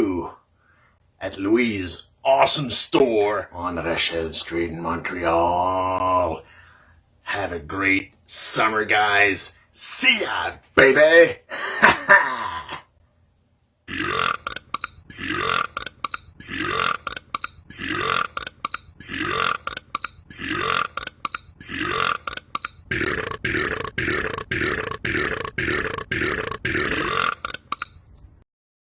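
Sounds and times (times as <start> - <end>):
man burping: 11.5 - 12.9, 13.9 - 27.9.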